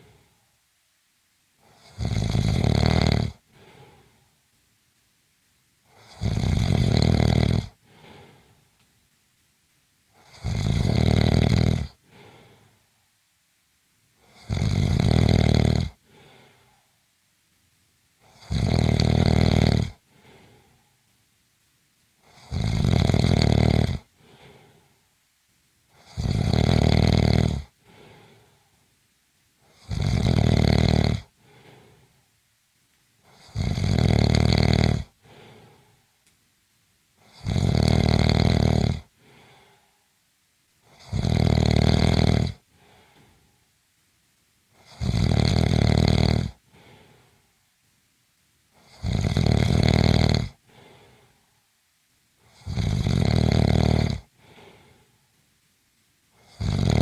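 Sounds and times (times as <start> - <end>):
soft breath: 0.0 - 0.6, 3.4 - 4.5, 7.7 - 8.8, 11.9 - 13.2, 16.0 - 17.1, 20.0 - 21.2, 24.1 - 25.2, 27.7 - 28.9, 31.4 - 32.4, 35.1 - 36.3, 39.1 - 40.2, 42.6 - 43.8, 46.6 - 47.6, 50.6 - 51.7, 54.2 - 55.4
person snoring: 1.6 - 4.2, 5.9 - 8.6, 10.2 - 12.7, 14.2 - 16.8, 18.2 - 20.8, 22.2 - 24.9, 25.9 - 28.6, 29.7 - 32.1, 33.3 - 36.0, 37.2 - 39.9, 40.8 - 43.4, 44.8 - 47.4, 48.8 - 51.4, 52.4 - 55.1, 56.4 - 57.0.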